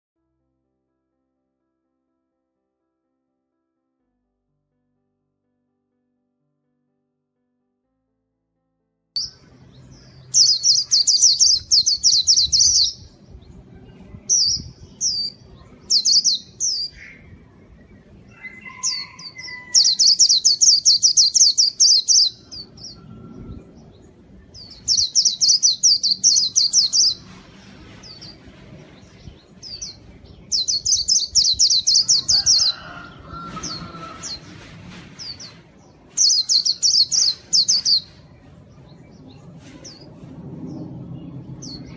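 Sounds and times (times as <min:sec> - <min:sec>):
bird twittering song: 0:09.2 - 0:27.3, 0:28.0 - 0:32.8, 0:35.2 - 0:40.1.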